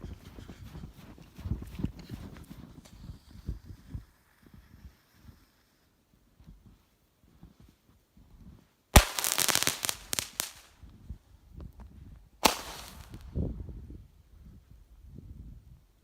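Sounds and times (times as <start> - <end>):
rapid firework bangs: 9.0 - 10.7, 12.4 - 13.2
firework crackle: 9.0 - 10.8, 12.4 - 13.4.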